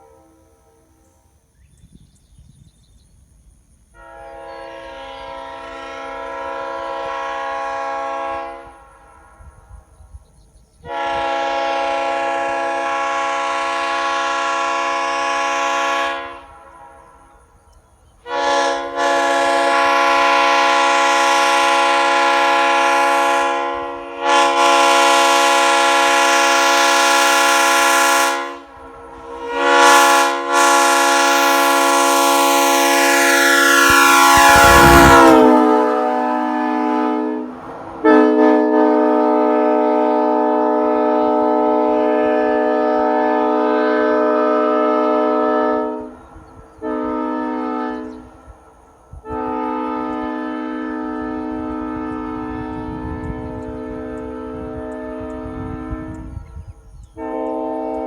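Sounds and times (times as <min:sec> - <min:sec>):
train horn chord blasts: 0:00.0 - 0:01.4, 0:04.0 - 0:09.9, 0:10.8 - 0:17.6, 0:18.2 - 0:58.0.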